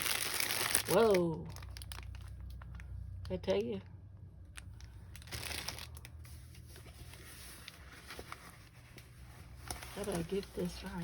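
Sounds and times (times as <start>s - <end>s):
plastic packaging crinkling: 0.0s - 2.9s, 4.6s - 8.8s, 9.5s - 11.0s.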